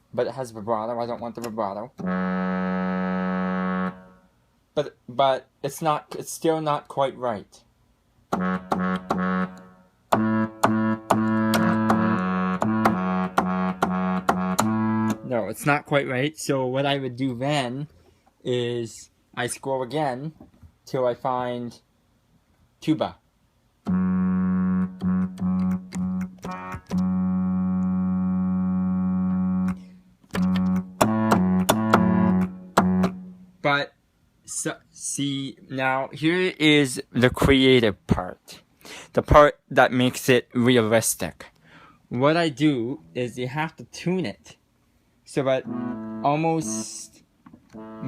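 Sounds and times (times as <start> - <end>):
electronic keyboard trumpet blasts: 2.0 - 4.3, 8.3 - 15.5, 23.9 - 33.5, 45.6 - 47.1, 47.7 - 48.0.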